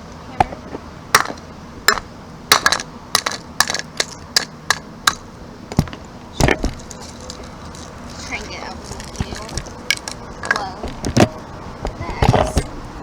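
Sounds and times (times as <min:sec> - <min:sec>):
hammer knocking on ice: 0:05.1 - 0:06.9, 0:08.9 - 0:12.7.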